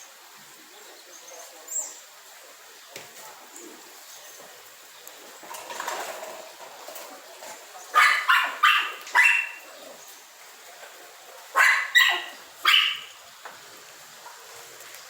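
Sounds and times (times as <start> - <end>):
dog barking: 7.9 - 9.7, 11.5 - 13.2.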